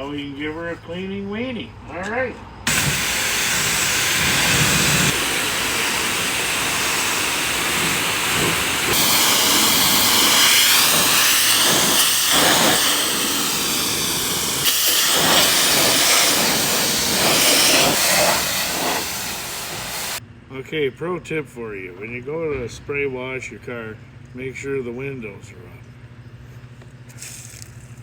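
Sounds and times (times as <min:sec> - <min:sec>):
pressure washer spraying water: 0:02.7 - 0:20.2.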